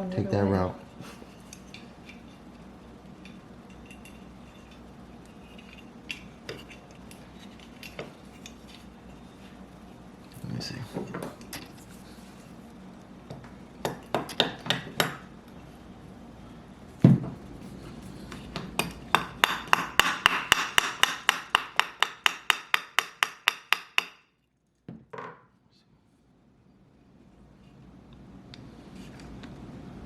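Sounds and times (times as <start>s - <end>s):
hammer tapping a punch: 13.8s - 15.2s, 18.6s - 24.2s.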